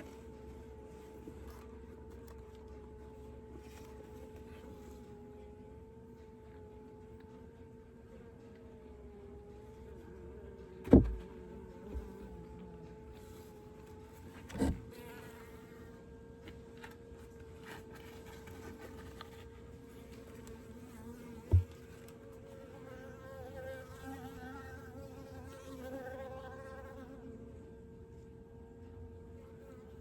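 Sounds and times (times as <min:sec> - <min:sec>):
honeybees humming: 0:00.0 - 0:30.0.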